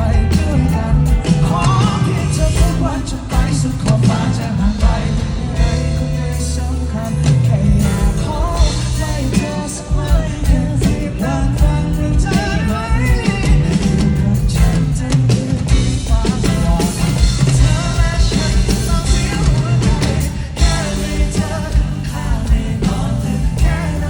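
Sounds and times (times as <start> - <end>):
bass guitar: 0.0 - 24.0
drums: 0.0 - 24.0
guitars: 0.0 - 24.0
person singing lead vocal: 0.0 - 24.0.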